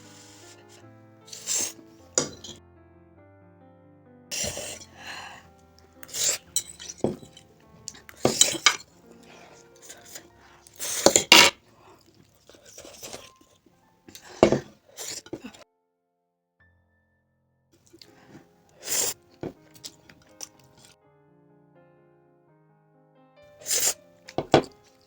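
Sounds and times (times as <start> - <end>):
utensil clinking against dish: 1.3 - 2.6, 4.3 - 5.4, 6.0 - 11.6, 14.1 - 15.6, 23.6 - 24.8.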